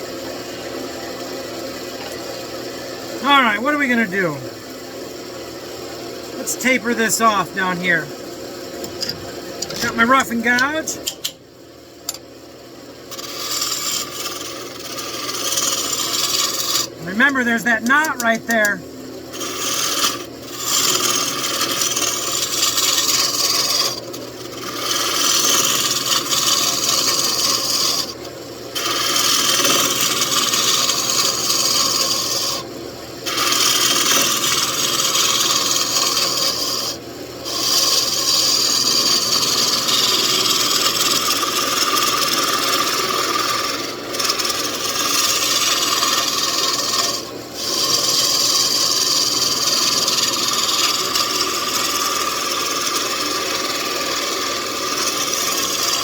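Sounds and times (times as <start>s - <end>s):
gouge scraping wood on lathe: 13.1s - 18.6s, 19.3s - 28.2s, 28.8s - 32.6s, 33.2s - 56.0s.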